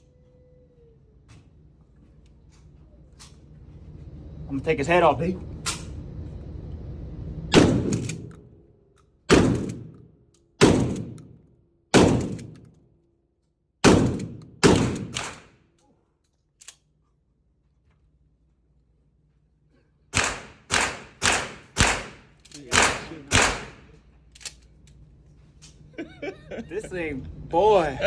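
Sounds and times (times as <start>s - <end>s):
shotgun shots ringing: 7.5s - 8.5s, 9.3s - 12.7s, 13.8s - 15.5s, 20.2s - 23.9s.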